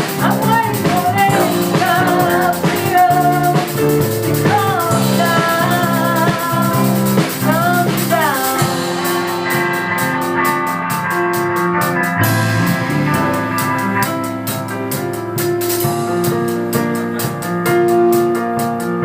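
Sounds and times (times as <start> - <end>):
person singing: 0.0 - 10.6, 12.3 - 14.1
rock band with drums: 0.0 - 19.0.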